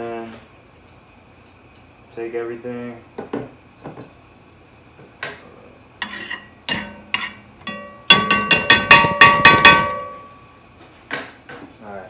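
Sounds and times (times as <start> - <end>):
utensil clinking against bowl: 6.0 - 10.4.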